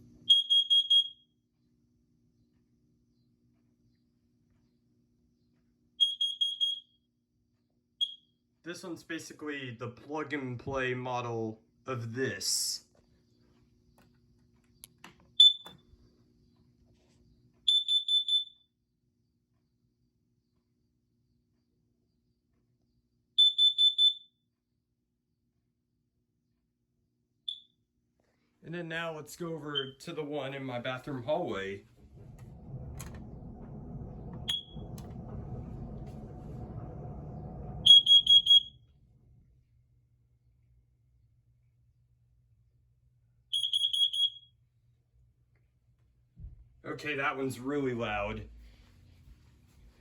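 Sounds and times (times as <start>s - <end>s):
smoke alarm shrill beeps: 0.2s - 1.3s, 6.0s - 7.0s, 8.0s - 8.3s, 15.4s - 15.7s, 17.7s - 18.7s, 23.4s - 24.4s, 27.5s - 27.7s, 29.8s - 30.0s, 34.5s - 34.8s, 37.8s - 38.8s, 43.5s - 44.6s
smoke alarm clicks: 0.3s - 1.1s, 6.0s - 6.9s, 15.4s - 15.8s, 17.7s - 18.6s, 23.4s - 24.2s, 43.6s - 44.4s
low rumble: 30.9s - 41.8s, 47.6s - 50.0s.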